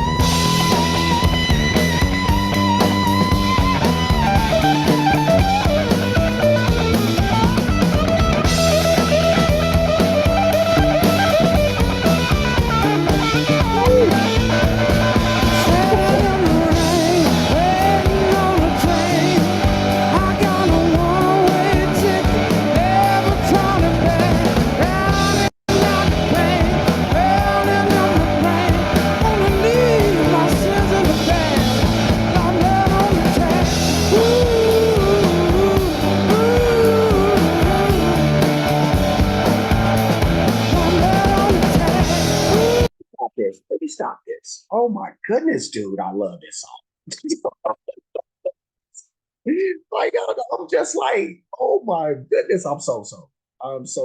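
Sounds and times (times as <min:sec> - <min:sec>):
blues-rock band playing: 0:00.0 - 0:42.9
electric guitar bending notes: 0:00.0 - 0:42.9.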